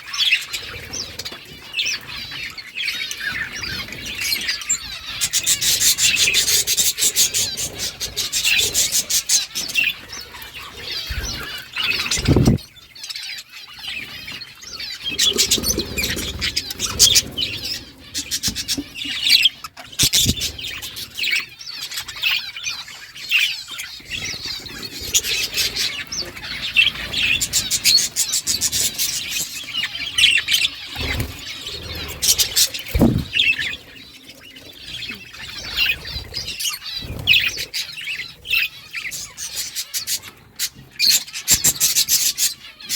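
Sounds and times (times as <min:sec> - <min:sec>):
flock of budgerigars chirping: 0:00.0 - 0:42.9
low thumps: 0:32.9 - 0:33.4.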